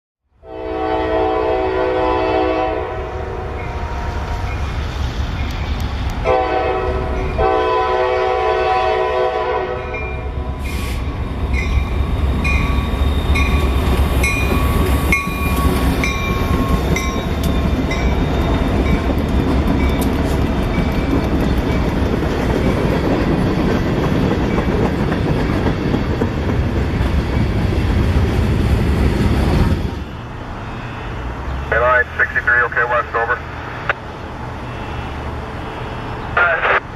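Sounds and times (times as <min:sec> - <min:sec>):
train horn blasts: 0:00.4 - 0:04.5, 0:06.2 - 0:10.0
train rumbling: 0:00.5 - 0:36.9.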